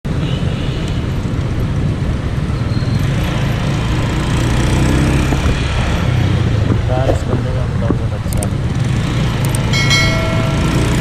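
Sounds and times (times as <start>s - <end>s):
motorcycle engine running: 8.8s - 11.0s.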